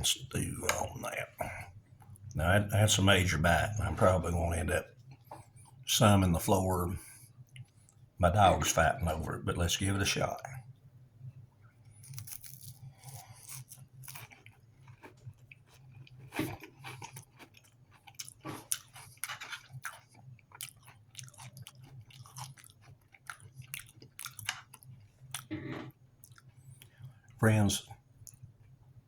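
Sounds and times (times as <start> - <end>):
low steady hum: 0.0 - 29.0
person chewing crunchy cracker: 11.9 - 25.5, 26.2 - 27.1.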